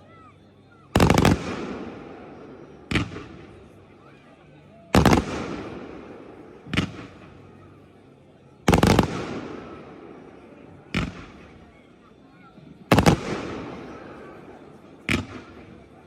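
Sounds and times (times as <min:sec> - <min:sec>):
fireworks sharp bang: 0:01.0 - 0:02.1, 0:05.0 - 0:07.4, 0:08.7 - 0:09.9, 0:12.9 - 0:15.9
fireworks burst ringing: 0:01.0 - 0:04.0, 0:04.9 - 0:16.0.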